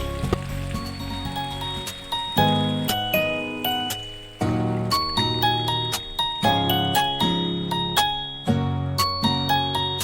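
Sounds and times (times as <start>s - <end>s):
bright chime-like keyboard tune: 2.1s - 10.0s.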